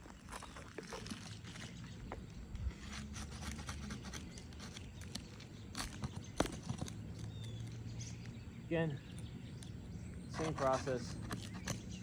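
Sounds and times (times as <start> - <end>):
hand tool clicks and scrapes: 10.3 - 12.0.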